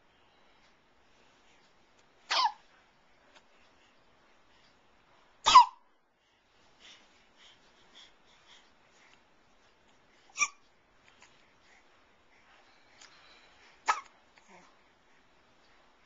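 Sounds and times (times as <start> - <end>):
faint small baby sounds: 2.2 - 2.7, 10.2 - 11.7, 13.0 - 15.0
baby hiccuping: 2.3 - 2.6, 5.4 - 5.8, 10.3 - 10.6, 13.8 - 14.2.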